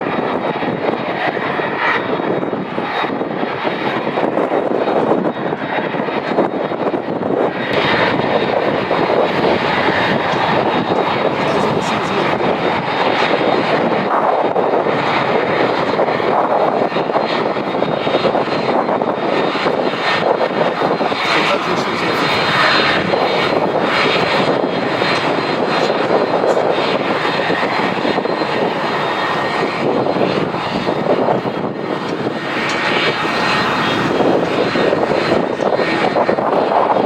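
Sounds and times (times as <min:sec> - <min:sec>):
jet engines running: 0:00.0 - 0:37.0.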